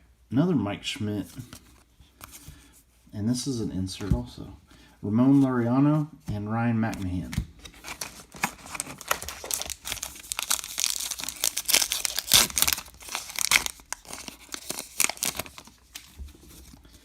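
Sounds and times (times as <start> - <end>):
wrapper tearing and crinkling: 7.8 - 16.1.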